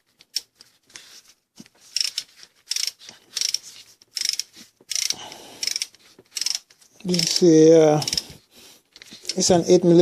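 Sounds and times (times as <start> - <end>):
ratchet wrench clicking: 2.0 - 3.6, 4.2 - 7.4, 8.0 - 8.2.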